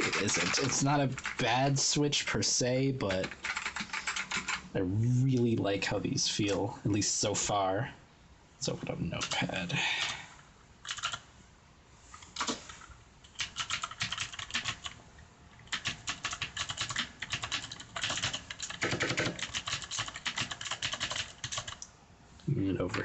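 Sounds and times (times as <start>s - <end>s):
clicky mechanical keyboard typing: 0.0s - 1.5s, 3.1s - 4.6s, 9.2s - 9.4s, 10.8s - 11.2s, 13.2s - 15.0s, 15.6s - 21.9s.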